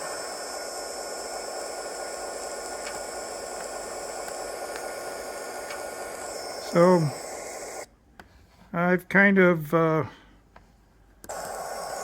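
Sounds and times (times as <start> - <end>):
locomotive idling through phone speaker: 0.0 - 7.8.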